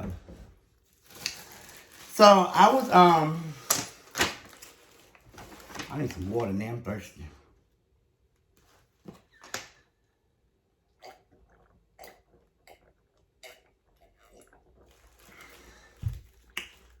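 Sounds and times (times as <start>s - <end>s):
person crunching cookies: 1.1s - 5.3s, 14.8s - 17.0s.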